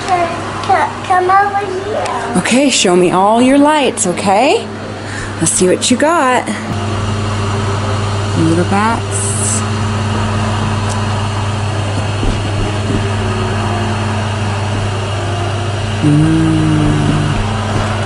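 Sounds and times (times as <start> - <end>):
electric blower fans humming: 0.0 - 18.0
short low steady tone: 13.0 - 18.0.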